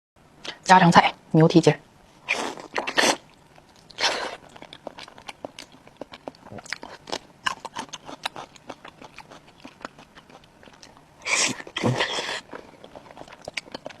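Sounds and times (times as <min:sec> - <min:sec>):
chewing clicks: 0:03.3 - 0:11.0, 0:12.5 - 0:14.0.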